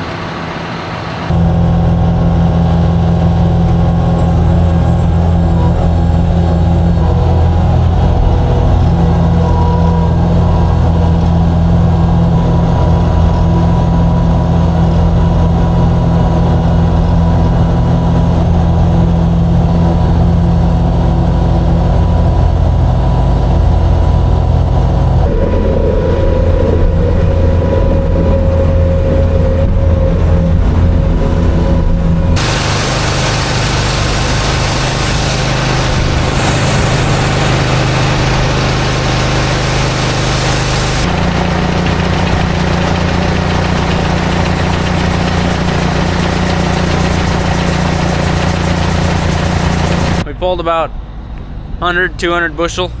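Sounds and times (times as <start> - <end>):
tractor engine running: 0.0 - 50.3
grain vacuum rushing: 32.4 - 50.3.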